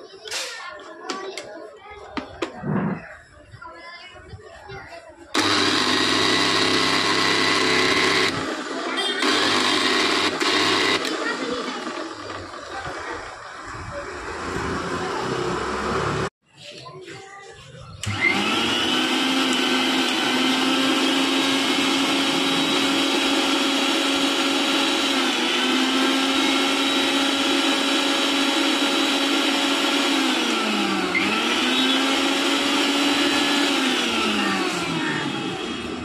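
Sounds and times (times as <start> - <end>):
small electric motor whining: 5.4 - 8.5, 9.2 - 11.2.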